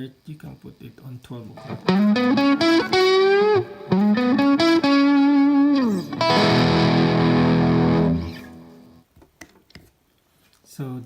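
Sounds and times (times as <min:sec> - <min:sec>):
overdriven electric guitar: 0:01.6 - 0:09.0.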